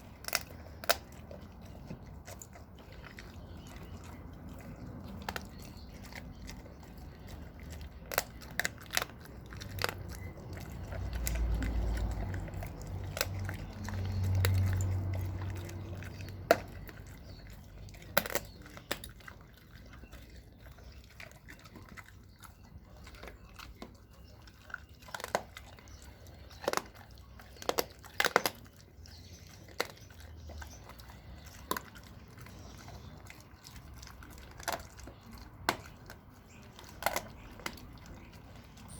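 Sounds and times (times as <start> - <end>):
dog chewing meat: 0.0 - 38.9
dog crunching bone: 0.0 - 38.9.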